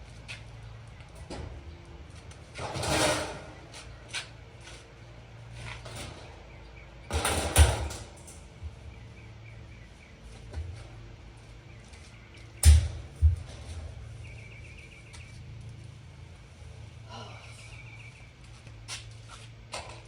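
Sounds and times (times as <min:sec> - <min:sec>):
loud scraping rattles: 0:02.5 - 0:04.3, 0:05.5 - 0:08.6
clicks and knocks on sheet metal: 0:02.6 - 0:04.3, 0:07.0 - 0:08.5.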